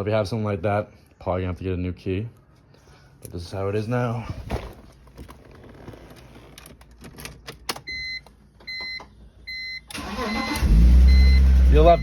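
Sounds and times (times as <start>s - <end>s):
dashboard warning chimes: 7.8s - 12.0s
starter cranking and engine starting: 9.9s - 11.8s.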